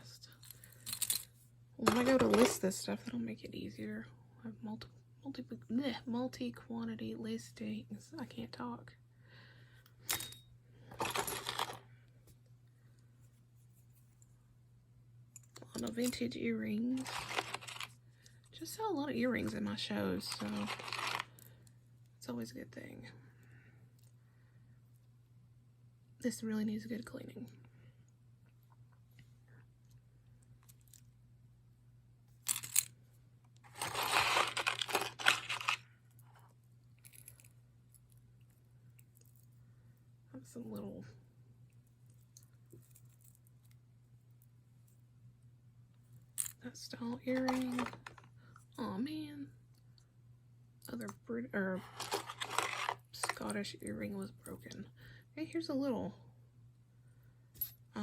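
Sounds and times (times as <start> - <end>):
metal jewelry clinking: 0.4 - 2.5, 10.1 - 11.8, 17.0 - 17.9, 20.3 - 21.2, 32.5 - 32.9, 33.7 - 35.8
packaging rustling and tearing: 17.0 - 17.9, 20.3 - 21.3, 33.7 - 35.8, 47.4 - 48.2, 51.9 - 53.0.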